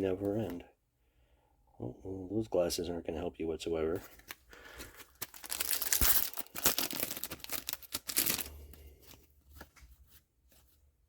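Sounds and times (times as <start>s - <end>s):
wrapper tearing and crinkling: 5.0s - 8.6s.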